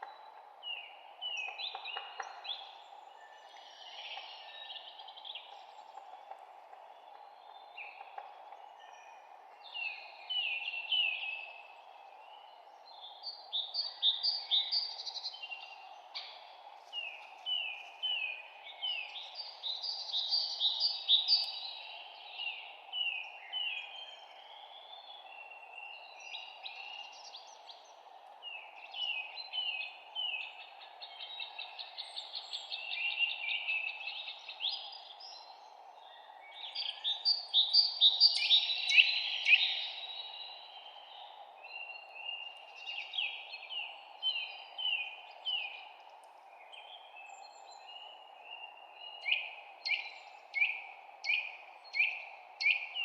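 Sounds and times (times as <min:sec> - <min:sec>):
songbirds singing: 0:00.0 - 0:53.0.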